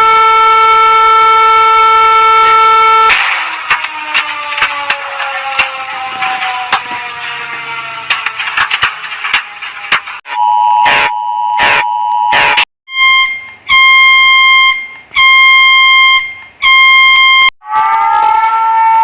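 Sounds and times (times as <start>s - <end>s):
rising tone: 3.8s - 10.6s
long harsh beeps: 10.3s - 17.5s
two-tone attention signal: 10.4s - 17.5s.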